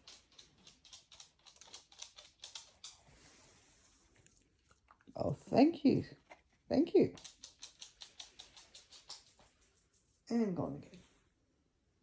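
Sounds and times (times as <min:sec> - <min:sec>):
puppy clicks and taps: 0:00.0 - 0:03.3, 0:07.0 - 0:10.2.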